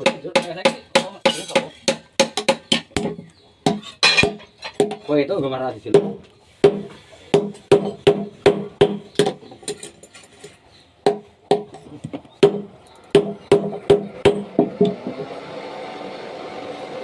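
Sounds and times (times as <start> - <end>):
hammer knocks on hollow object: 5.9 - 9.4, 11.0 - 11.7, 12.4 - 15.2.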